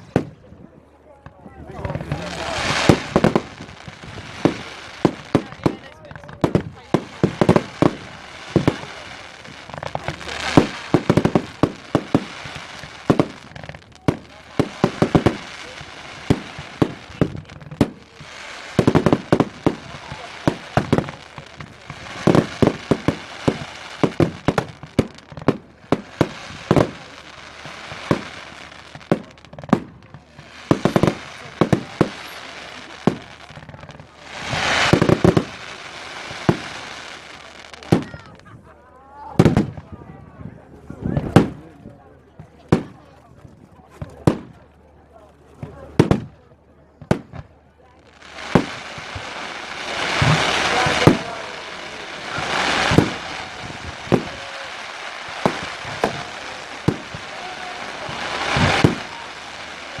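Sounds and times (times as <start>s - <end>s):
fireworks bangs and crackling: 0.0s - 60.0s
steady hiss: 48.1s - 60.0s.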